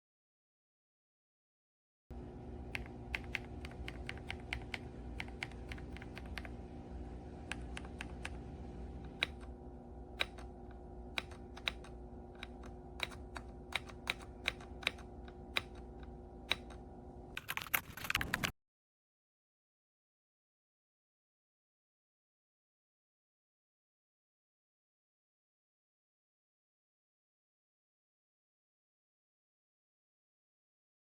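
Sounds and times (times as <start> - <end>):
steady low hum: 2.1 - 18.5
mechanical keyboard typing: 2.7 - 6.6, 7.4 - 18.5.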